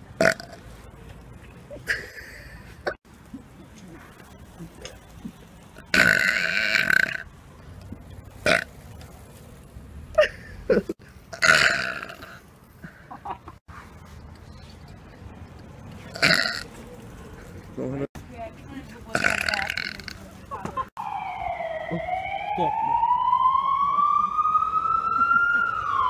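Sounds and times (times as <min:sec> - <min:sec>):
person burping loudly: 0:00.2 - 0:00.6, 0:05.9 - 0:07.2, 0:08.4 - 0:08.7, 0:10.7 - 0:12.4, 0:16.1 - 0:16.6, 0:19.1 - 0:20.2.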